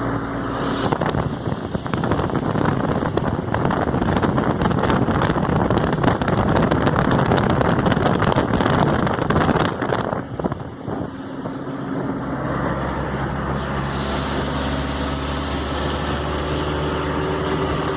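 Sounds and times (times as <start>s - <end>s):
wind buffeting microphone: 0.1s - 17.9s
dense crackle: 0.9s - 10.7s.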